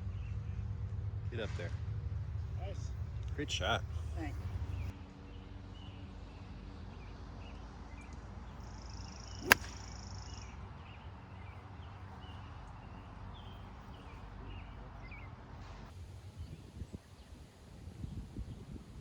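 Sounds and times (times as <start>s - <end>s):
golf club striking ball: 9.4s - 9.9s.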